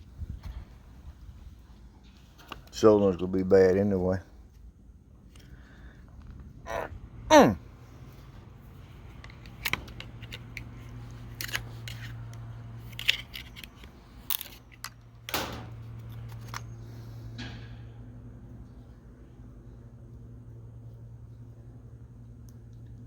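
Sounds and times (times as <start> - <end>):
steady low hum: 0.0 - 23.0
tools and parts clicking: 9.1 - 16.7.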